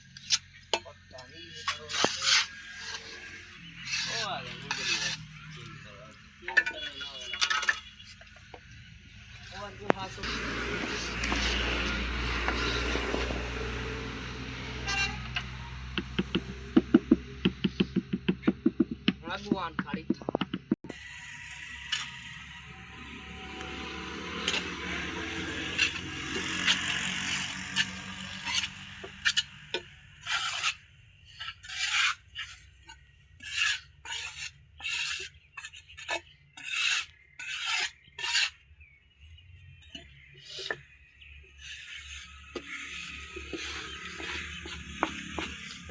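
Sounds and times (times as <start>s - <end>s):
hand tool scraping masonry: 0.0s - 8.6s, 9.4s - 20.8s, 23.5s - 38.7s, 39.8s - 45.9s
vehicle horn toot: 14.8s - 15.4s.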